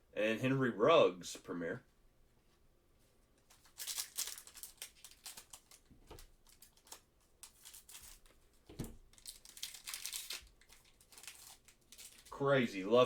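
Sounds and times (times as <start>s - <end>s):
card pack wrapper crinkling: 3.5s - 8.4s, 9.1s - 12.4s.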